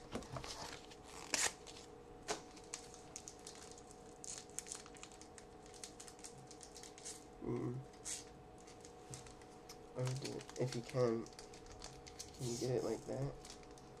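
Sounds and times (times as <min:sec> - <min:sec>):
wrapper tearing and crinkling: 0:01.0 - 0:07.3, 0:10.0 - 0:14.0
cards rustling: 0:08.0 - 0:13.8.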